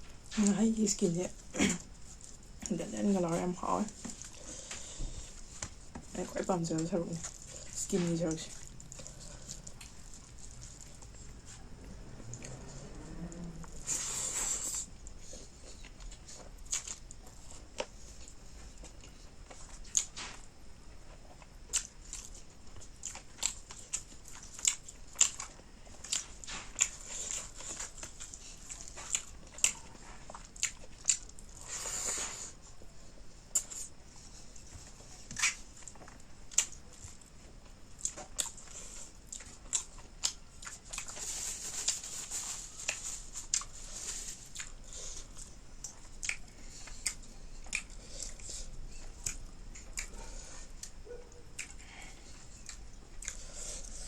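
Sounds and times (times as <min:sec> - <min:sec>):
person chewing: 0:03.3 - 0:32.9, 0:33.5 - 0:54.0.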